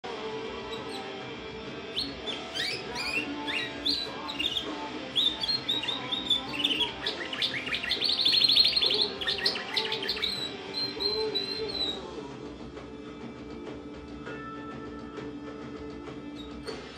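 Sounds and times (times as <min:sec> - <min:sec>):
canary singing: 0:00.1 - 0:12.3, 0:15.8 - 0:16.9.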